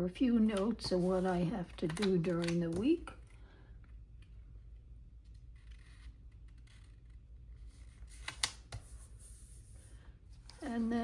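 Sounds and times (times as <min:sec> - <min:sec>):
paper stickers rustling and clicking: 0:00.5 - 0:03.0.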